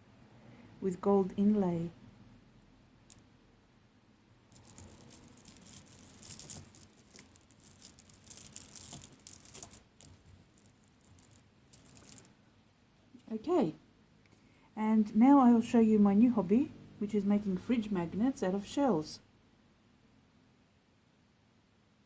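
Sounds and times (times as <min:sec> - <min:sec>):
beads clicking and rattling: 0:03.0 - 0:03.3, 0:04.5 - 0:12.4.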